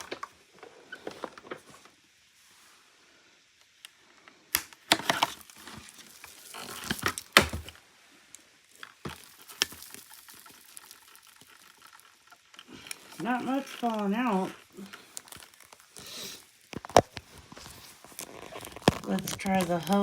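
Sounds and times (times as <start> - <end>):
plastic parts knocking and clattering: 4.6 - 7.8, 8.8 - 16.0.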